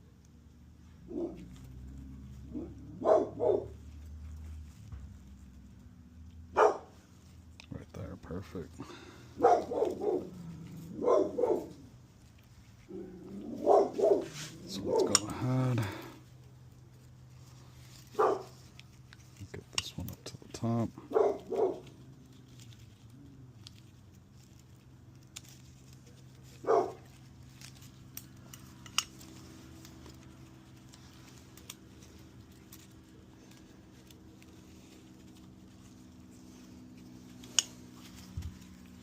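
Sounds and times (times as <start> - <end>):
steady low hum: 0.0 - 39.0
dog barking: 1.1 - 1.4, 2.5 - 3.8, 6.5 - 7.0, 9.4 - 10.3, 10.9 - 11.8, 13.5 - 15.2, 18.1 - 18.6, 21.0 - 21.9, 26.6 - 27.1
metallic clicks of engine parts: 15.0 - 15.5, 27.6 - 29.8, 37.4 - 37.9.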